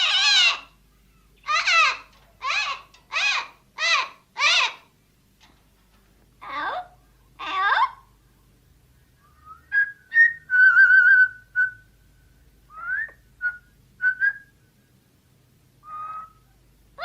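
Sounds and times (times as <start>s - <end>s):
parrot harsh call: 0.0s - 0.8s, 1.4s - 4.9s, 6.4s - 8.0s
parrot whistling: 9.3s - 11.8s, 15.8s - 16.4s.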